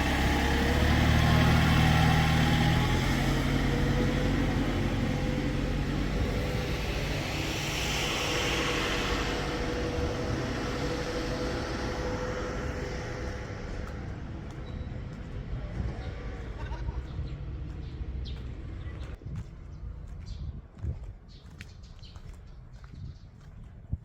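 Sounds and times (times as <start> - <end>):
vehicle engine running: 0.0 - 20.2
hiss: 4.0 - 13.7.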